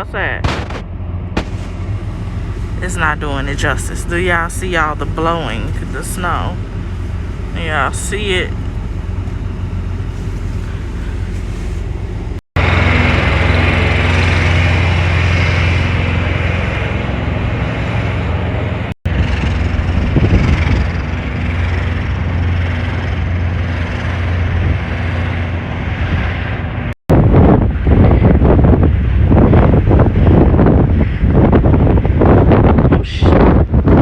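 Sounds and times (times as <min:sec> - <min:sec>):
truck engine humming: 0:00.1 - 0:26.9
blizzard wind blowing hard: 0:00.4 - 0:34.0.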